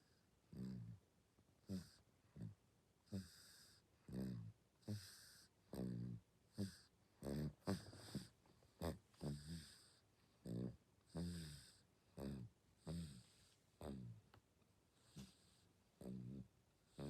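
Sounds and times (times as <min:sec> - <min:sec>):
baby snoring: 0:01.6 - 0:14.2, 0:15.1 - 0:17.0.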